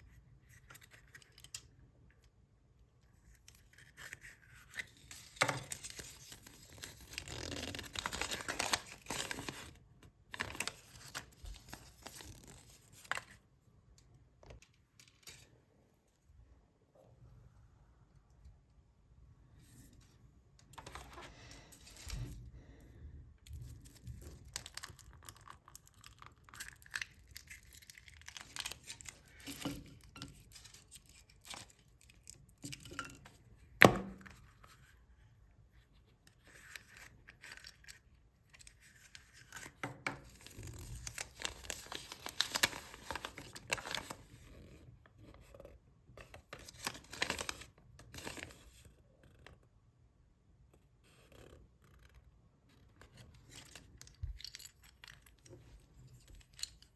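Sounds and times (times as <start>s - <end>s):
foil wrappers crinkling: 40.4s - 44.2s.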